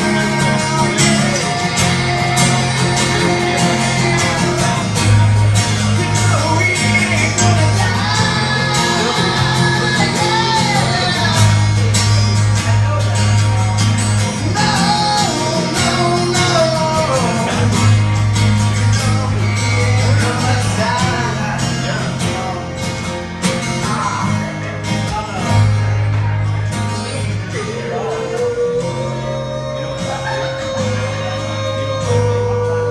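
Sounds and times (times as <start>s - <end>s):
person singing long sliding notes: 0.0s - 12.2s
strummed guitar chords: 0.0s - 32.9s.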